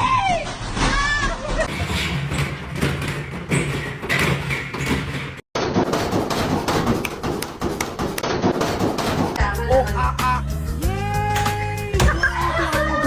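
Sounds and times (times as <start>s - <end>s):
washing machine knocking and banging: 1.6s - 5.5s, 11.2s - 13.0s.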